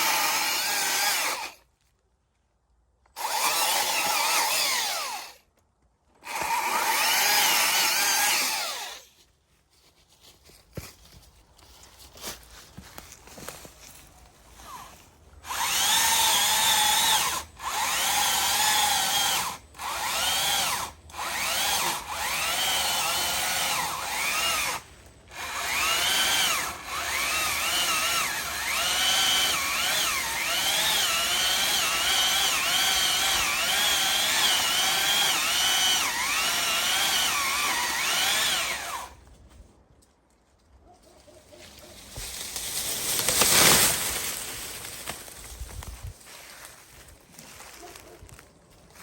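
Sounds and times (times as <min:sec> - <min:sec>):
chainsaw cutting into wood: 0:00.0 - 0:01.6, 0:03.1 - 0:05.5, 0:06.2 - 0:09.1, 0:14.6 - 0:39.2, 0:42.1 - 0:46.1.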